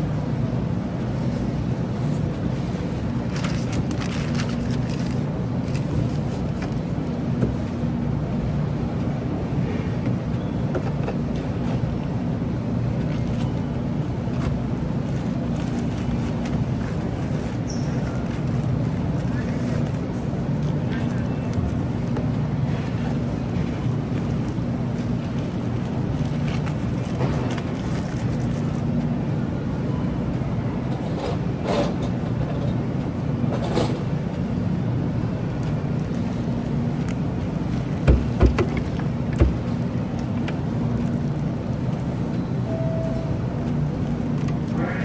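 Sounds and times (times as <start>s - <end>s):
machinery humming: 0.0s - 45.0s
sharp knocks: 38.1s - 39.6s.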